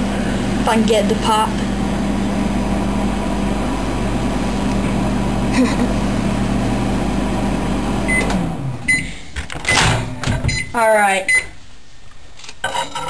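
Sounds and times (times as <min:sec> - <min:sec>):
microwave oven humming: 0:00.0 - 0:11.6
microwave beeping: 0:01.9 - 0:11.6.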